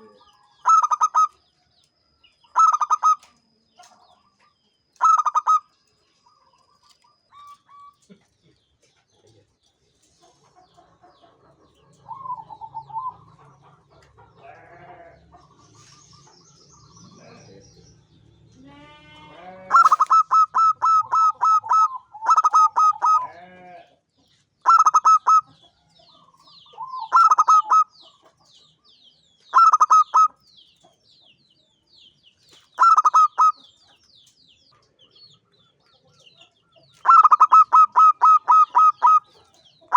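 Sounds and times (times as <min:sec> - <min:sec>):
dove cooing: 0:00.0 - 0:01.4, 0:02.6 - 0:03.3, 0:05.0 - 0:05.7, 0:11.9 - 0:13.5, 0:19.7 - 0:23.3, 0:24.7 - 0:25.5, 0:26.7 - 0:27.9, 0:29.5 - 0:30.3, 0:32.8 - 0:33.6, 0:37.0 - 0:39.9
small bird chirping: 0:00.0 - 0:23.3, 0:24.2 - 0:39.9.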